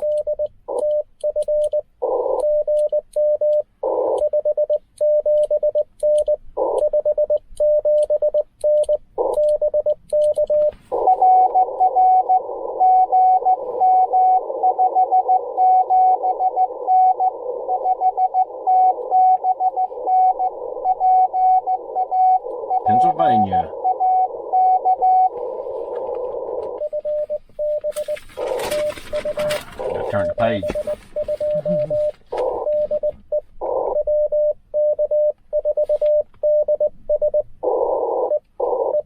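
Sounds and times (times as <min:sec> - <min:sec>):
higher-pitched morse code: 0:00.0 - 0:39.0
morse code sidetone: 0:00.0 - 0:39.0
radio band noise hiss: 0:21.8 - 0:24.5, 0:28.2 - 0:32.9.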